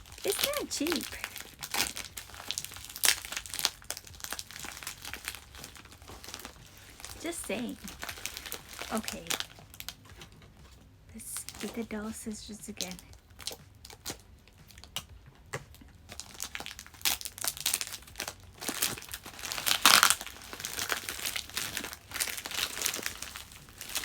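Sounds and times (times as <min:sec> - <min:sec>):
packing tape tearing: 0:00.0 - 0:10.3, 0:16.1 - 0:24.0
plastic bag crinkling: 0:00.0 - 0:10.4, 0:11.3 - 0:14.9, 0:16.0 - 0:24.0.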